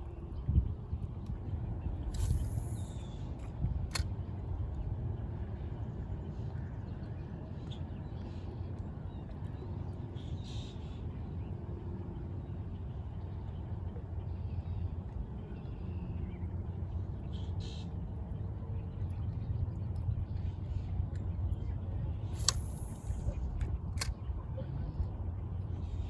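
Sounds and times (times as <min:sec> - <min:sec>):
sharp click: 0:02.1 - 0:04.1, 0:22.4 - 0:24.2.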